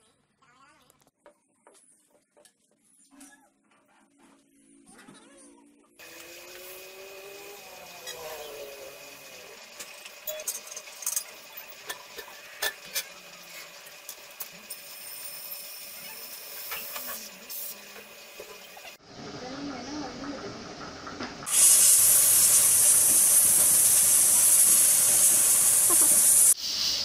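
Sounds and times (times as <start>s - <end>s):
sandblaster air hiss: 6.0s - 9.6s, 14.9s - 17.9s, 21.5s - 27.0s.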